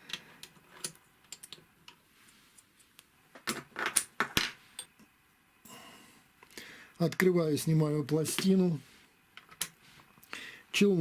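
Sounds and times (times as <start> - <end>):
small metal parts clicking: 0.1 - 1.6.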